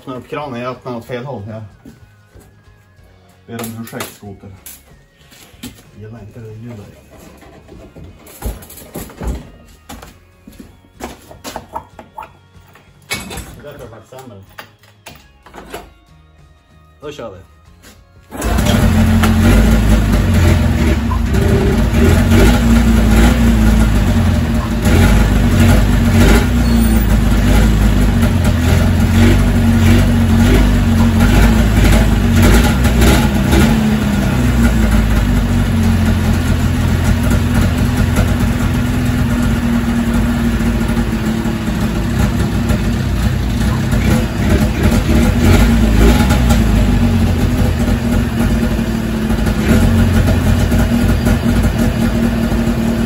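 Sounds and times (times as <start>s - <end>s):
two-stroke engine idling: 18.4s - 53.0s.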